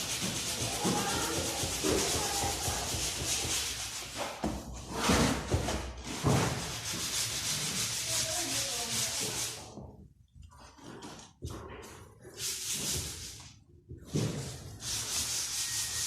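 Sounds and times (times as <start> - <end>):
sandpaper scraping on wood: 0.0 - 9.7, 12.3 - 13.4, 14.3 - 16.0.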